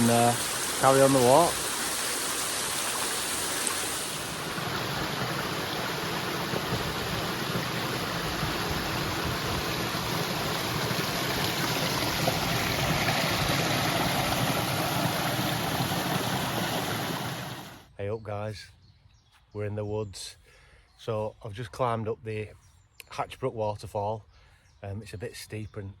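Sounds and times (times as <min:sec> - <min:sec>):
waterfall rushing and splashing: 0:00.0 - 0:17.8.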